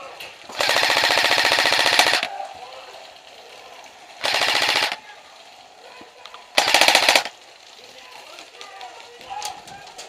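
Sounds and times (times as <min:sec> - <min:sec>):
airsoft rifle full-auto burst: 0:00.5 - 0:02.3, 0:04.2 - 0:05.0, 0:06.5 - 0:07.4.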